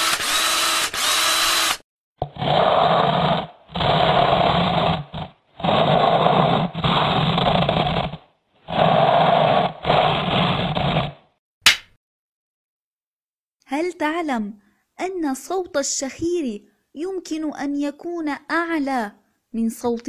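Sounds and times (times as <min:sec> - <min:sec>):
person snoring: 0:02.2 - 0:11.2.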